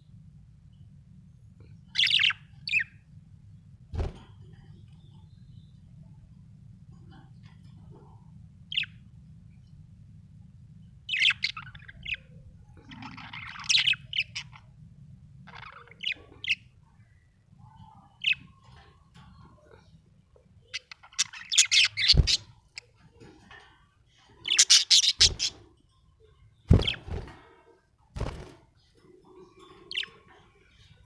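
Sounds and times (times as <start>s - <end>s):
faint low hum: 0.0s - 31.0s
budgerigar chirping: 20.7s - 22.8s, 24.5s - 25.6s.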